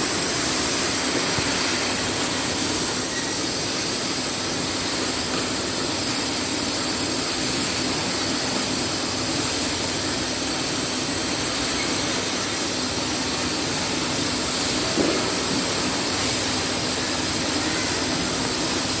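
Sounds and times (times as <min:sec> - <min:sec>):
machine hiss with high whine: 0:00.0 - 0:19.0.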